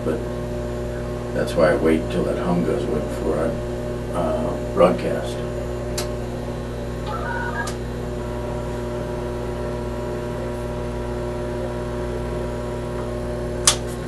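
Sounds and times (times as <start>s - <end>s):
electrical hum of radio: 7.0s - 8.0s.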